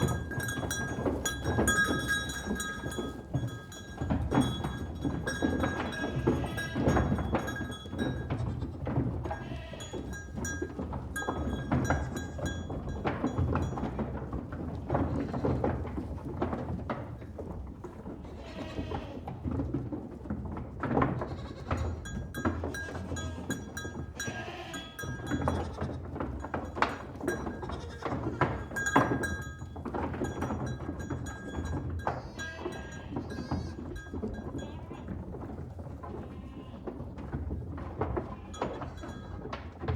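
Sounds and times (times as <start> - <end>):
sharp knocks and clatters: 0.0 - 18.0, 19.4 - 39.9
goats bleating: 5.6 - 7.5, 8.1 - 10.2, 18.2 - 19.2, 21.2 - 22.1, 22.7 - 26.1, 27.4 - 28.8, 32.0 - 35.2, 36.2 - 36.9.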